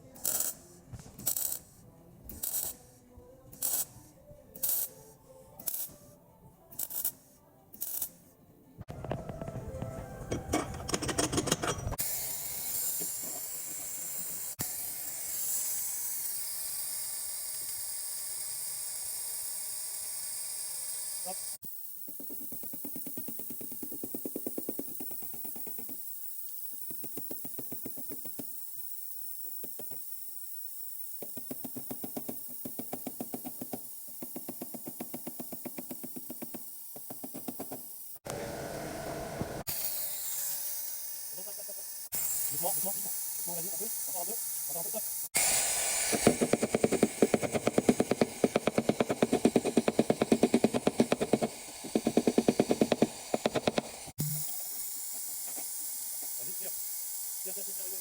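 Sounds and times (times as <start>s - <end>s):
tool tapping on sheet metal: 46.1s - 54.0s.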